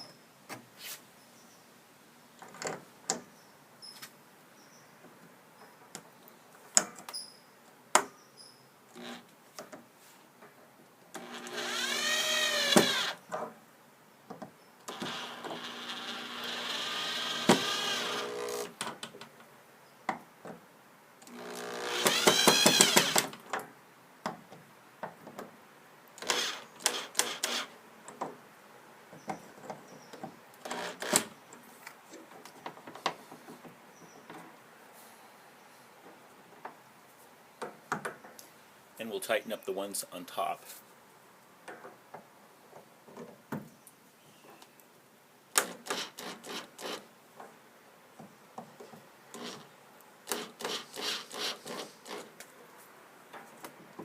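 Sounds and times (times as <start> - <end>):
power drill driving screws into wood: 11.2 - 13.2, 14.9 - 18.9, 21.2 - 23.4, 26.2 - 27.7, 30.6 - 31.3, 45.5 - 47.0, 49.3 - 52.3.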